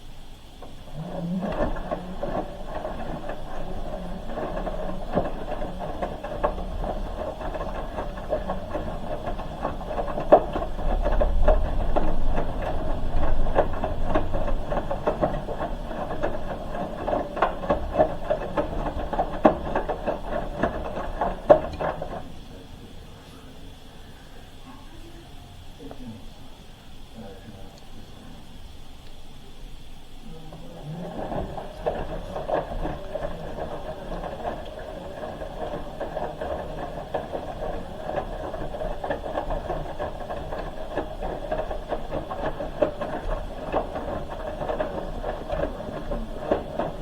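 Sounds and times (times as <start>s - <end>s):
washing machine drum rumbling: 0.0s - 47.0s
load knocking in drum: 0.6s - 22.3s.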